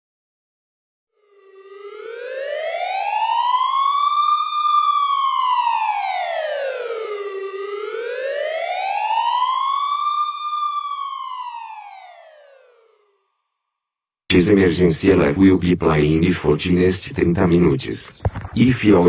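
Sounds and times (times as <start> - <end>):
siren wailing: 1.2 - 13.2.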